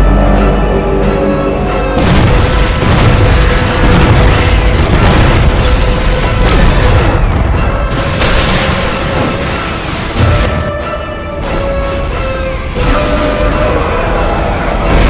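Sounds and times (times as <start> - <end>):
dramatic orchestral music: 0.0 - 15.0
deep heavy boom: 2.0 - 7.7
rumbling crash of impacts: 2.0 - 10.6.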